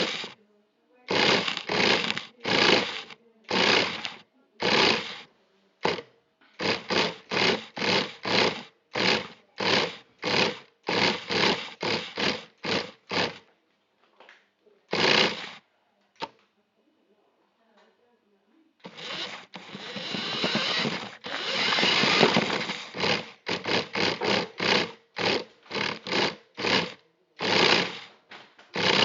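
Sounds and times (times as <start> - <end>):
radio-controlled car motor bursts: 0.0 - 0.4, 1.1 - 6.0, 6.6 - 13.5, 14.9 - 15.6, 18.9 - 29.0.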